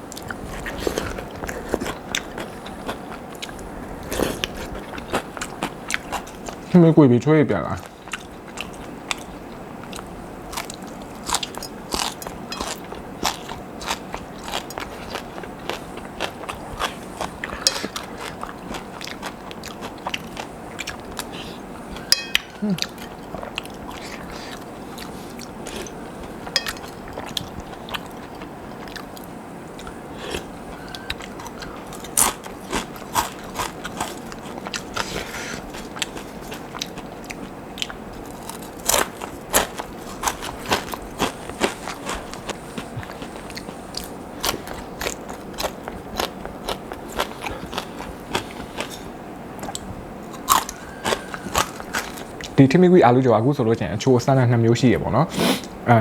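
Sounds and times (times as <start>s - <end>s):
quiet chewing: 0.0s - 6.8s, 7.7s - 52.6s
crunching crispy food: 7.7s - 49.1s, 49.7s - 52.6s.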